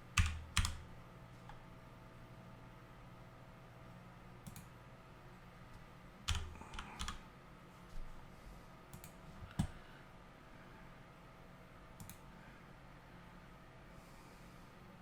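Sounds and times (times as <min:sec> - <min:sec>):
keyboard keystrokes: 0:00.2 - 0:00.8, 0:06.3 - 0:07.2
mouse clicks: 0:04.5 - 0:04.7, 0:12.0 - 0:12.2.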